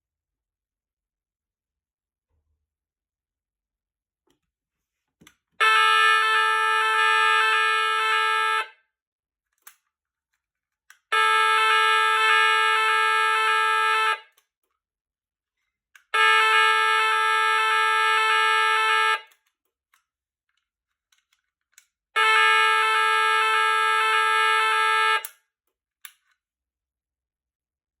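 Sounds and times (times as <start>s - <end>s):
fire alarm evacuation tone: 5.6s - 8.8s, 11.1s - 14.3s, 16.2s - 19.3s, 22.2s - 25.3s.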